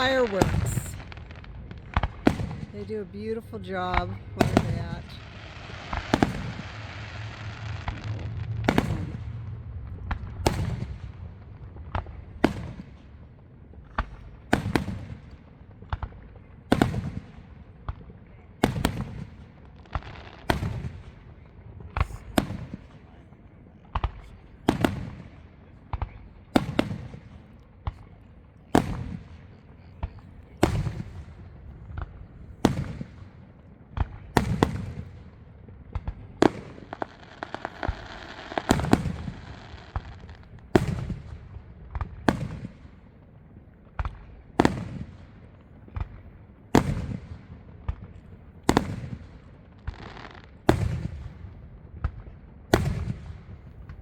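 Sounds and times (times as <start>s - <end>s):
fireworks bursting: 0.0s - 13.2s, 18.6s - 21.3s, 24.0s - 28.1s, 28.7s - 43.2s, 43.9s - 54.0s
steady hissing noise: 5.2s - 10.4s.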